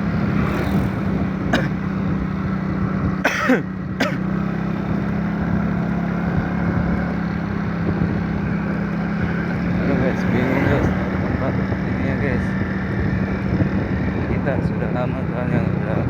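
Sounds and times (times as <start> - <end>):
road noise: 0.0 - 16.0
vehicle engine drone: 0.0 - 16.0
person clearing throat: 1.4 - 1.8, 3.2 - 4.3.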